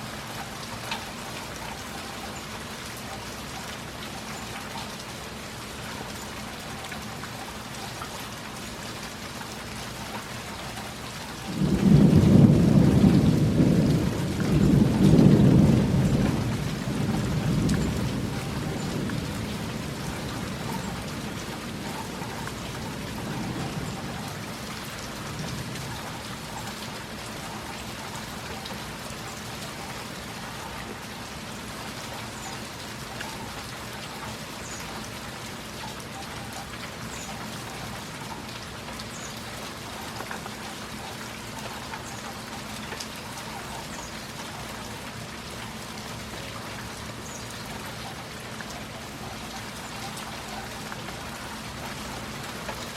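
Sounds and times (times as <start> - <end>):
steady rain falling: 0.0 - 52.9
thunder rumble: 11.5 - 21.7.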